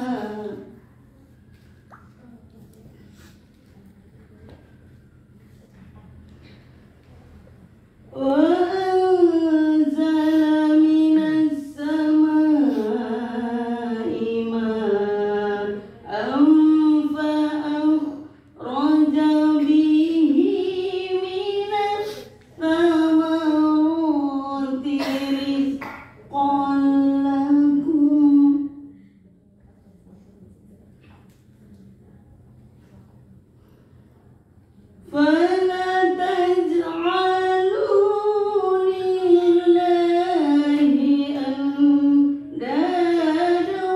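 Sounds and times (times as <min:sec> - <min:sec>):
woman chanting melodically: 0:00.0 - 0:00.9, 0:08.1 - 0:28.9, 0:35.0 - 0:43.9.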